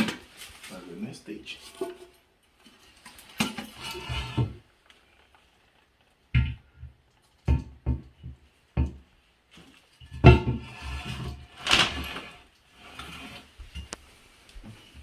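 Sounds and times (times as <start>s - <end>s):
scraping and rattling clatters: 1.6s - 5.4s, 9.6s - 15.0s
porcelain knocks and clunks: 6.4s - 9.0s, 10.1s - 12.2s.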